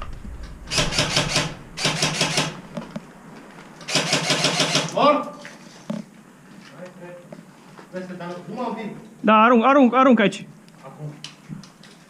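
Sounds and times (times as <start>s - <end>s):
rapid mechanical clicking: 0.0s - 2.6s, 3.8s - 5.0s.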